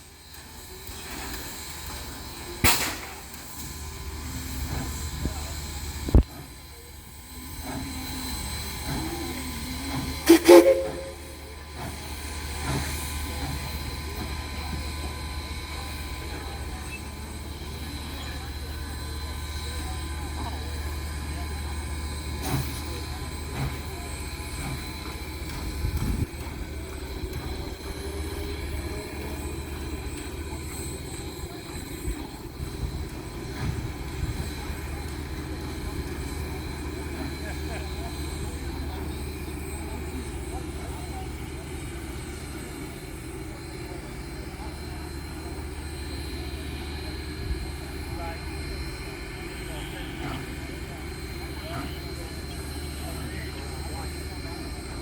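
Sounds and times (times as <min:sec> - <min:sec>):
steam whistle toot: 0:09.2 - 0:11.6.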